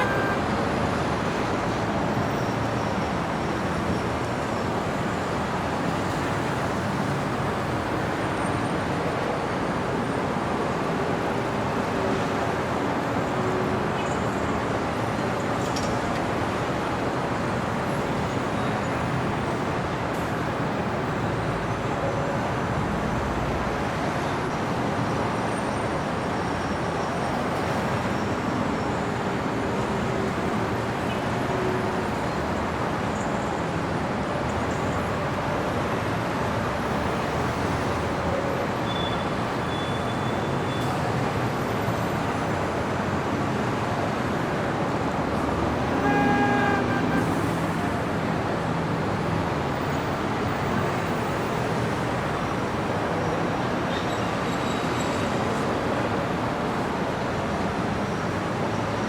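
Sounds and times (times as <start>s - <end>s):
car horn honk: 0.0s - 0.6s, 45.8s - 47.7s
city street traffic: 0.0s - 59.0s.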